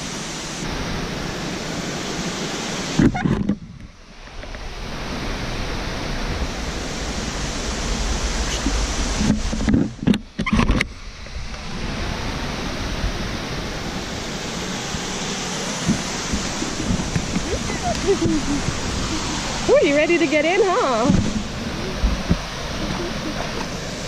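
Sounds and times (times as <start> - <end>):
waterfall pouring into pool: 11.6 - 24.0.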